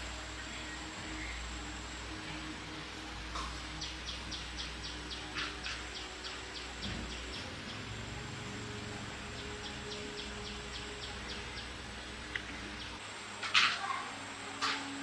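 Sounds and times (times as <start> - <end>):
low background hum: 0.0 - 15.0
bird chirping: 0.3 - 1.6, 3.3 - 13.0.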